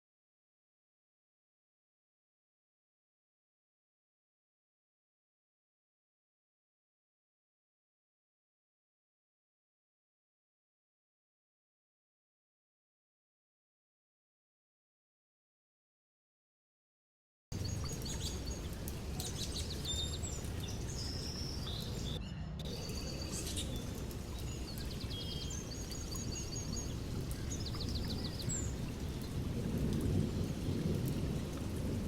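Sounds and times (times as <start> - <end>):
steady rain: 17.5 - 32.0
birds chirping trills: 17.6 - 32.0
low rumble of thunder: 17.6 - 32.0.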